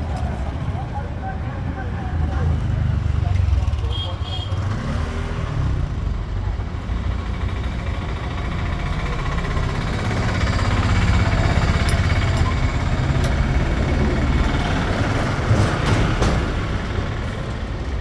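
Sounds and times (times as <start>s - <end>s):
motorcycle engine idling: 6.2s - 15.0s.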